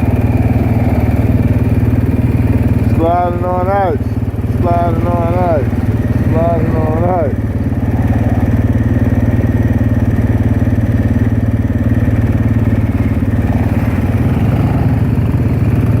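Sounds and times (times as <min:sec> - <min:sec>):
atv engine running: 0:00.0 - 0:16.0.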